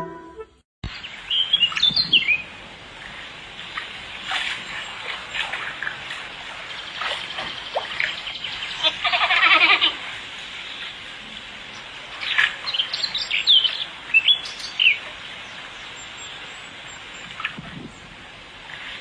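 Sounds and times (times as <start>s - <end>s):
bird chirping: 0.0s - 2.5s, 12.2s - 18.0s.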